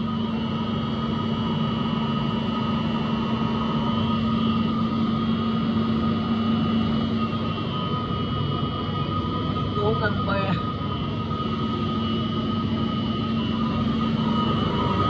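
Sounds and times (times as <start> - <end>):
constant whining tones: 0.0 - 15.0
machine hum: 0.0 - 15.0.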